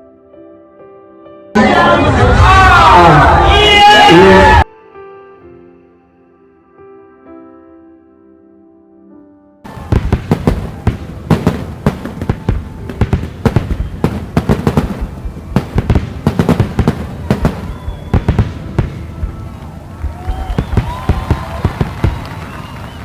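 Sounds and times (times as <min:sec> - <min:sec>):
soft music: 0:00.0 - 0:23.0
fireworks bangs and booms: 0:09.7 - 0:23.0.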